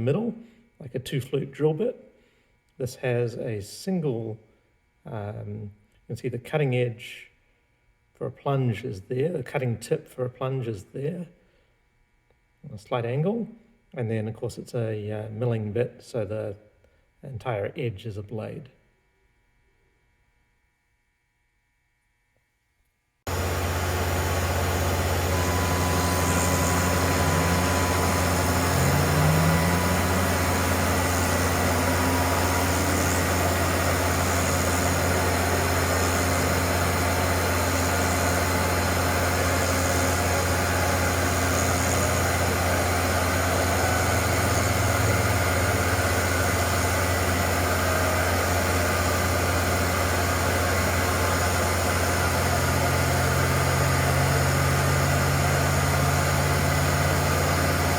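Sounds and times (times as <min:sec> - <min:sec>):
milling machine running: 0:23.3 - 0:57.9
short rising tones: 0:23.3 - 0:57.9.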